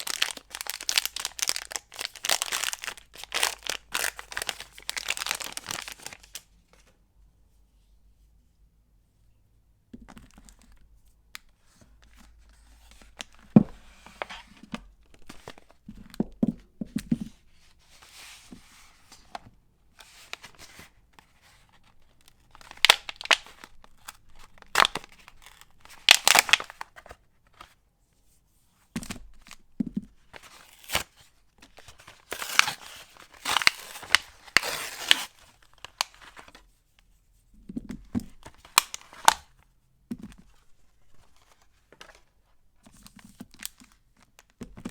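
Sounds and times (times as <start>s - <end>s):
wrapper crinkling: 0.0s - 6.4s, 22.6s - 23.5s, 24.5s - 26.8s, 32.1s - 36.2s
wrapper tearing: 0.0s - 6.4s, 22.6s - 23.7s, 24.5s - 26.8s, 32.2s - 36.2s, 38.6s - 39.4s.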